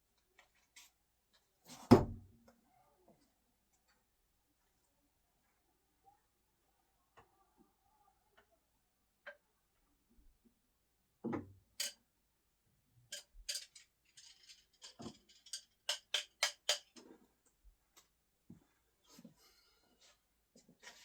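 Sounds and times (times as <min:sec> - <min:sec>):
screwdrivers clicking and knocking: 0:11.8 - 0:12.0, 0:13.1 - 0:17.1.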